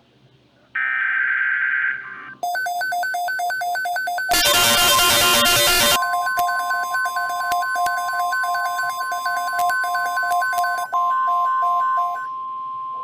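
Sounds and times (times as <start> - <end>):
steady attention tone: 0.8 - 13.0
repeating two-note beeping: 2.4 - 12.3
harsh buzzing noise: 4.3 - 8.8.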